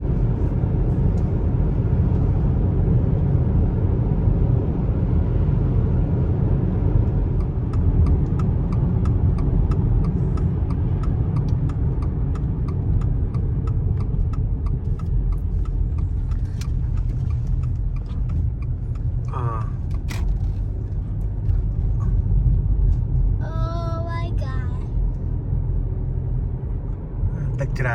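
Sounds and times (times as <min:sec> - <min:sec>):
car engine and road rumble: 0:00.0 - 0:27.9
regular ticking: 0:07.3 - 0:21.4.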